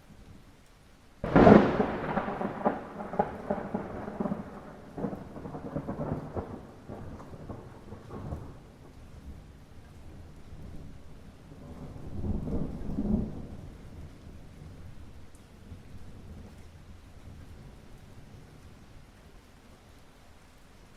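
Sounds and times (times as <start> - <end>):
light rain hiss: 0.0 - 20.9
thunderclap rumbling: 1.2 - 8.9, 11.5 - 14.1.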